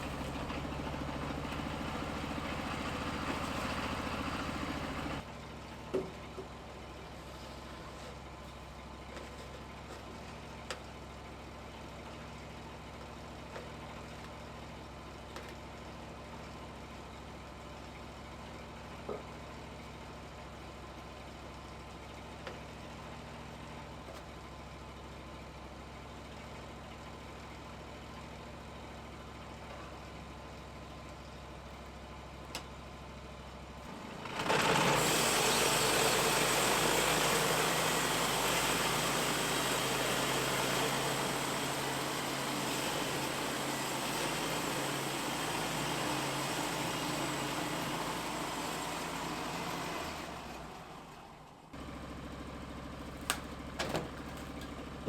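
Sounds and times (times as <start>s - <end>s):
sawmill cutting log: 0.0s - 5.3s, 33.9s - 51.2s
sawmill engine hum: 0.0s - 25.0s, 25.6s - 55.0s.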